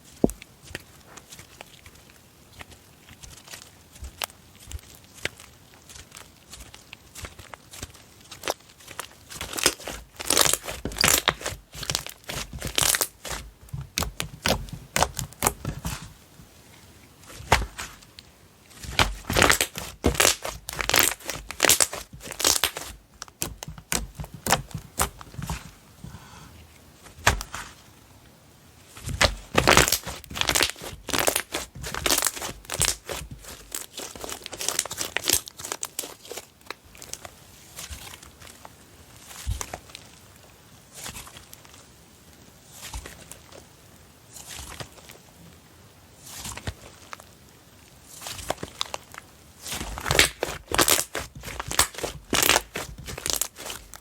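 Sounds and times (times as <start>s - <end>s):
slime crackling and popping: 0.1s - 16.2s, 17.2s - 25.7s, 28.9s - 41.8s, 48.1s - 54.0s.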